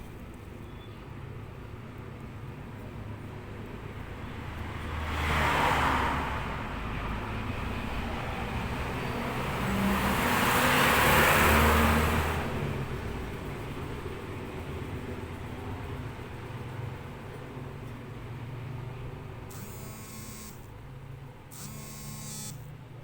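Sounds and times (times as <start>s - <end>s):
engine running: 19.5s - 20.7s.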